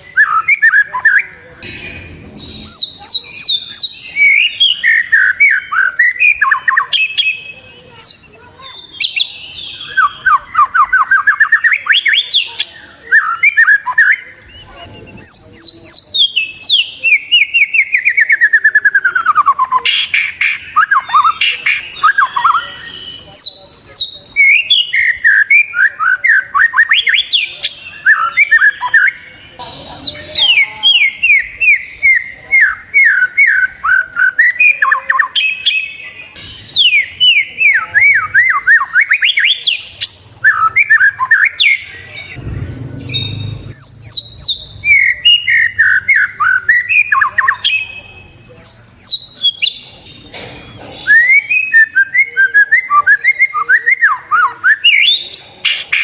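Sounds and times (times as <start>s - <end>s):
bird singing whistled notes: 0.0s - 42.4s, 43.0s - 56.0s
brief low rumble: 42.4s - 43.7s.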